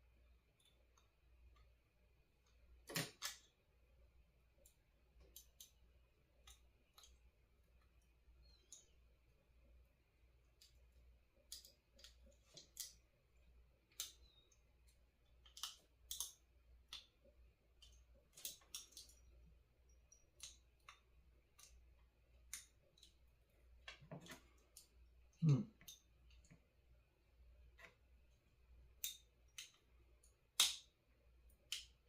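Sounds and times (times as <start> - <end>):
small clicks of chip pins: 2.4 - 3.6, 4.6 - 5.8, 10.5 - 13.1, 13.8 - 25.0, 28.9 - 32.0.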